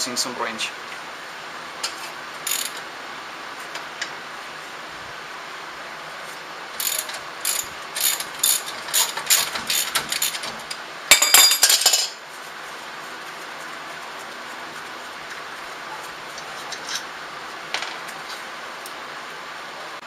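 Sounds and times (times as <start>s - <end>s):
ratchet wrench clicking: 2.5s - 2.8s, 6.8s - 10.8s.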